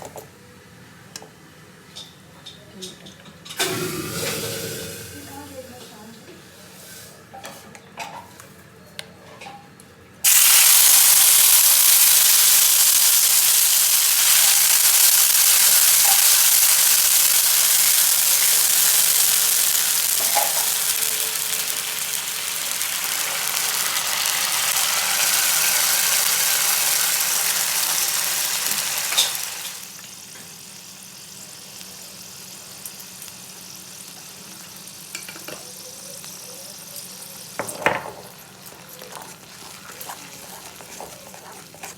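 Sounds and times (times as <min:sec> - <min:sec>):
food sizzling in oil: 0:10.2 - 0:41.9.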